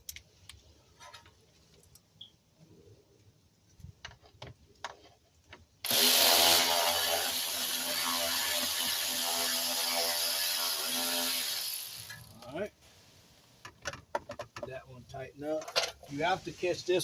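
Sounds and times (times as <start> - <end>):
cordless power tool running: 5.8 - 12.1.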